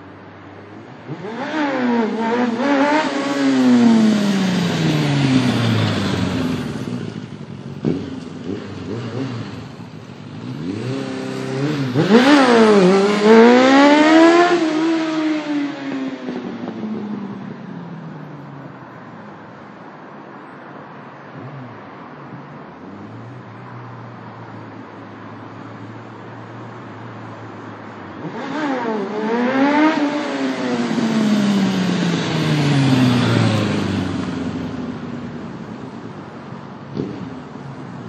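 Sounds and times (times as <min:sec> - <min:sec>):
motorcycle engine revving: 0:01.1 - 0:17.5, 0:28.2 - 0:36.2, 0:36.9 - 0:37.7.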